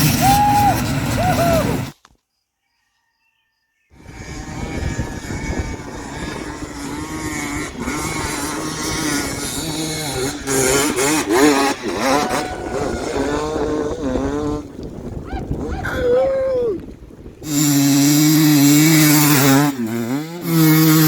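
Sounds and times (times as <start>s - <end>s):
dirt bike engine revving: 0.0s - 1.9s, 3.9s - 15.7s, 17.1s - 21.0s.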